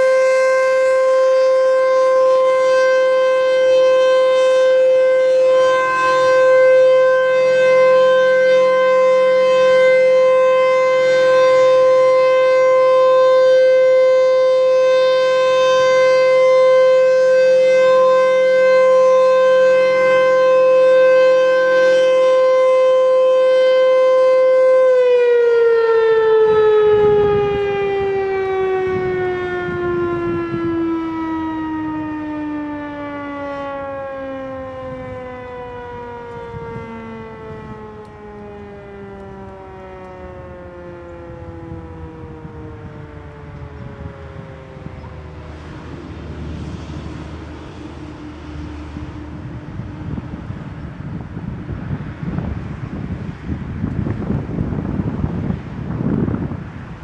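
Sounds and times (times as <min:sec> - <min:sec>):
tornado siren steady tone: 0:00.0 - 0:57.0.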